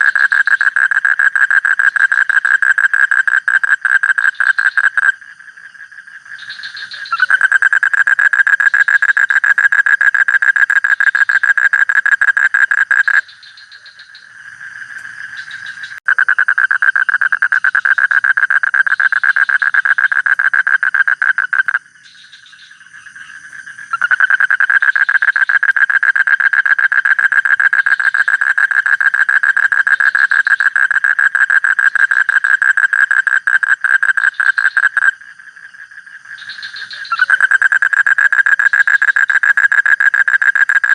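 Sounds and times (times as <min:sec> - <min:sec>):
frog calling in pulse trains: 0:36.2 - 0:40.9.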